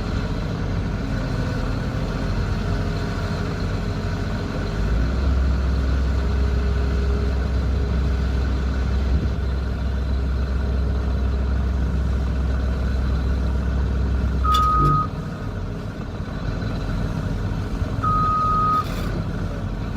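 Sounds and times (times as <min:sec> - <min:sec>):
diesel machinery rumble: 0:00.0 - 0:19.9
electronic beeps: 0:14.4 - 0:15.1.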